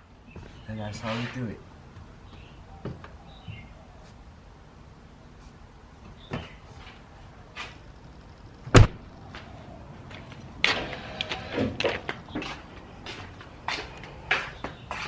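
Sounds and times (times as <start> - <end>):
truck door slamming: 8.7 - 9.0.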